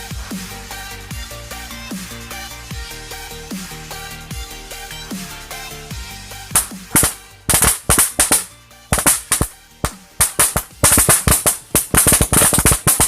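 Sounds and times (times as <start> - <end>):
electronic background music: 0.0 - 13.0
roll caps cracking: 6.6 - 13.0.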